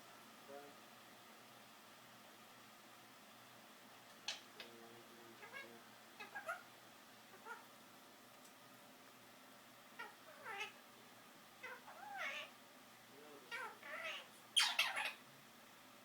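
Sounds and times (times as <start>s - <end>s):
bird harsh squawk: 5.4s - 6.7s, 10.0s - 10.8s, 13.5s - 15.2s.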